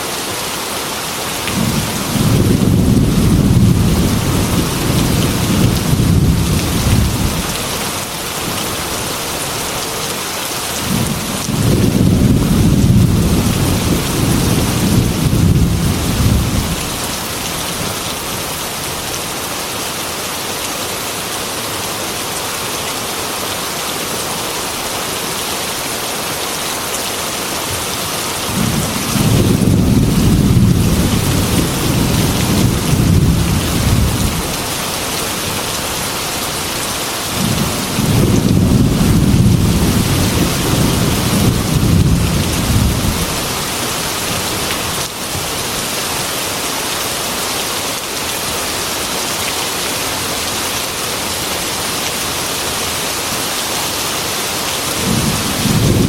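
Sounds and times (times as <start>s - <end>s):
heavy rain on window glass: 0.1s - 56.0s
thunder rumbling: 1.6s - 7.5s, 10.8s - 17.9s, 28.5s - 34.7s, 37.3s - 43.5s, 55.0s - 56.0s.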